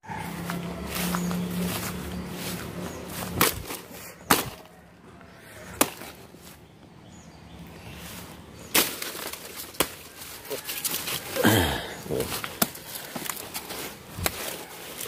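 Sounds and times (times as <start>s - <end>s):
blade chopping plant stalk: 3.2s - 4.7s.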